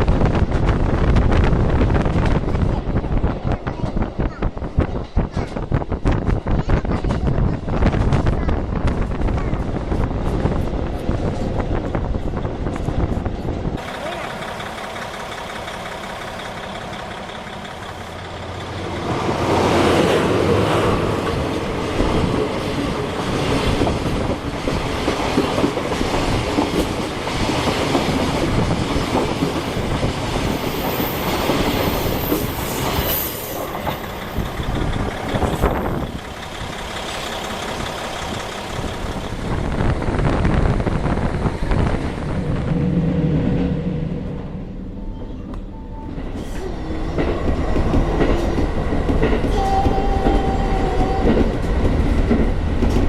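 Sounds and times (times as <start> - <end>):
train rumbling on rails: 0.0 - 53.0
diesel engine running: 13.8 - 20.4, 33.8 - 45.1.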